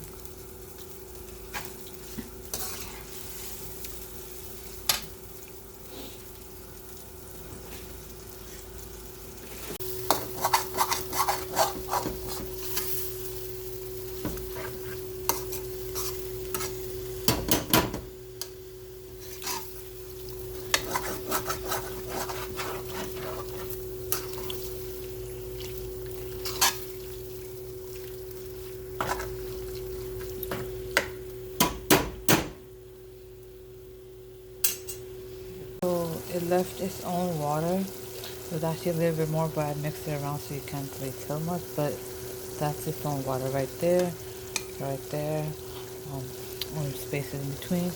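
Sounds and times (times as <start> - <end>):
faint sizzle of chicken: 0.0 - 31.6, 32.6 - 47.9
spoon scraping and knocking pan: 10.0 - 13.0, 14.2 - 18.1, 20.6 - 24.5, 29.0 - 29.4.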